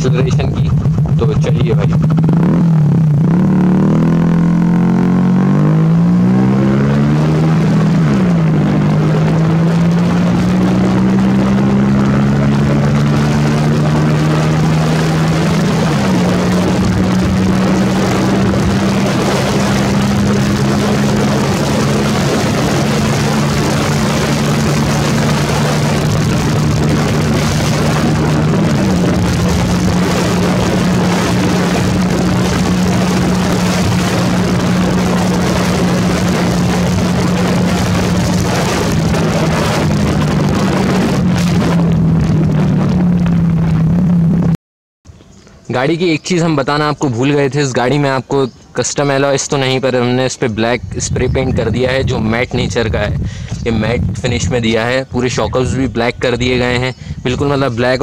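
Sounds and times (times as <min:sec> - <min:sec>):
motorcycle engine accelerating: 0:00.0 - 0:44.6
rushing wind noise: 0:00.0 - 0:44.6, 0:45.6 - 0:58.0.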